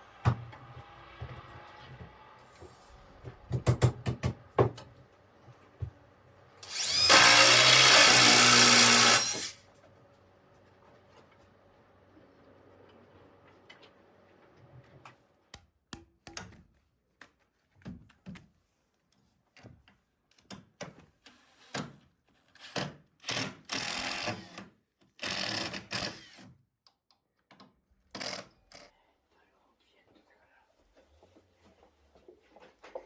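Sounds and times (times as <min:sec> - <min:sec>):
electric drill running: 0:06.6 - 0:09.6.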